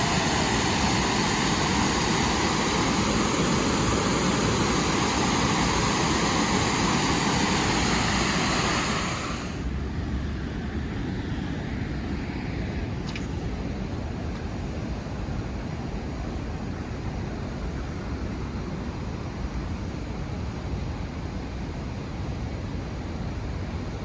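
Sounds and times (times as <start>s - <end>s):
waterfall rushing: 0.0s - 9.7s.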